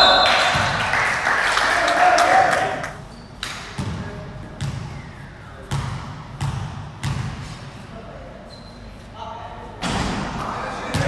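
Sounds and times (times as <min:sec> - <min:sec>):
players' voices: 0:00.0 - 0:03.0, 0:07.8 - 0:11.0
basketball bouncing on gym floor: 0:00.4 - 0:00.8, 0:03.7 - 0:05.1, 0:05.7 - 0:07.6.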